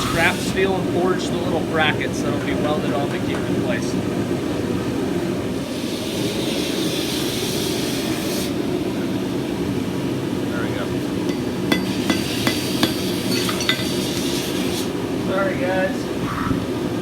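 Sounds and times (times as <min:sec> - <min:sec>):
steady low rumble: 0:00.0 - 0:02.6
hammer striking steel on anvil: 0:11.2 - 0:14.5.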